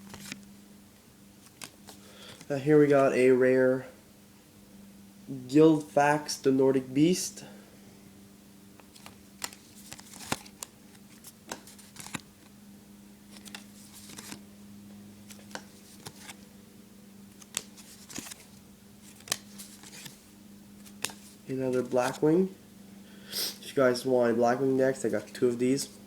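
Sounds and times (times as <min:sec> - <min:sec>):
cards scuffing together: 0:00.0 - 0:00.4, 0:08.8 - 0:12.2, 0:13.3 - 0:14.4, 0:15.3 - 0:16.5, 0:17.4 - 0:22.2
steady low hum: 0:00.0 - 0:26.0
trading cards clicking: 0:13.4 - 0:14.4, 0:15.3 - 0:16.4, 0:17.4 - 0:18.4, 0:19.1 - 0:20.2, 0:20.8 - 0:22.2.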